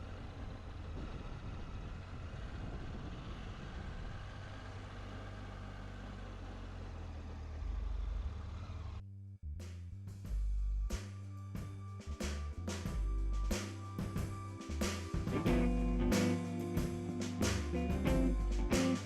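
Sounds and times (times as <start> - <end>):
motorcycle engine running: 12.7 - 19.0.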